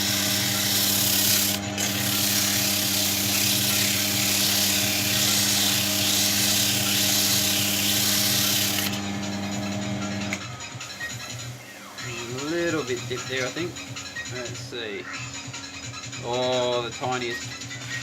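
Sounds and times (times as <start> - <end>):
sandpaper grinding on wood: 0.0 - 9.0
power tool motor hum: 0.0 - 10.4.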